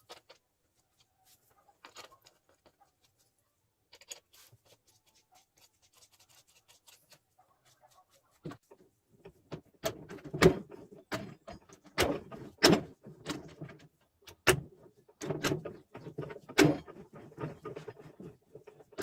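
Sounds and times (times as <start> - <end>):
metal gearbox parts clunking: 9.6 - 19.0.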